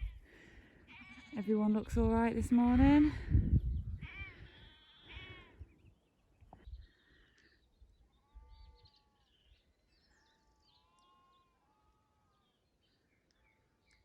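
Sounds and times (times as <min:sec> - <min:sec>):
lambs bleating: 0:00.9 - 0:01.4, 0:04.0 - 0:05.6
faint bird chirps: 0:03.8 - 0:14.0.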